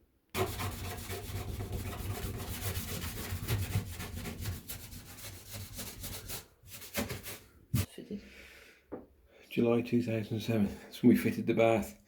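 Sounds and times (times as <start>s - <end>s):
hand scrubbing a surface: 0.4s - 7.9s.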